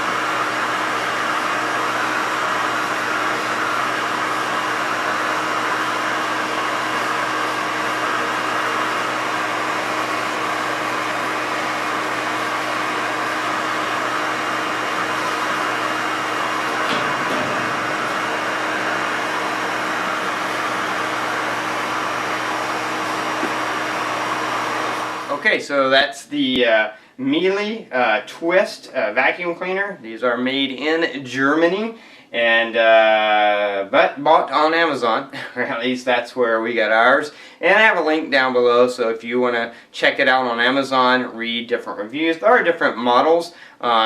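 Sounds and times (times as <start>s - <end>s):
vacuum cleaner running: 0.0s - 25.6s.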